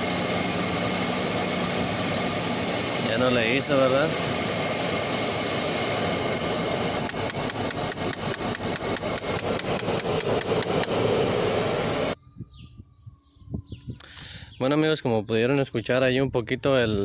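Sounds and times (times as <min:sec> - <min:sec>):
air conditioning blower rushing: 0:00.0 - 0:12.2
actuator clicking rapidly: 0:02.8 - 0:12.2.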